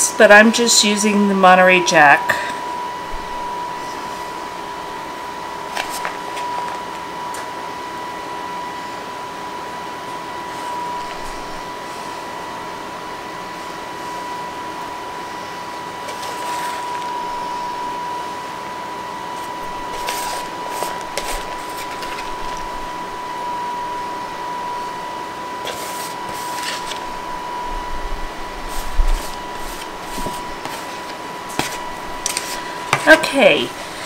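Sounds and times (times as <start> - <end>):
high-pitched whine: 0.0 - 34.0.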